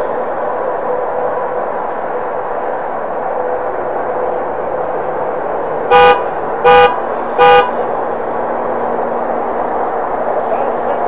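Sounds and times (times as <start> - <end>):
steady background noise: 0.0 - 11.0
vehicle horn honks: 5.9 - 7.8.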